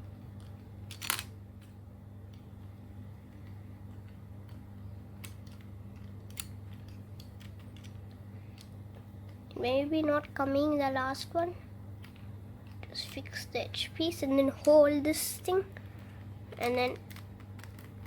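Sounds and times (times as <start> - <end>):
steady low hum: 0.0 - 18.0
plastic puzzle pieces clicking: 5.2 - 8.7, 16.5 - 18.0.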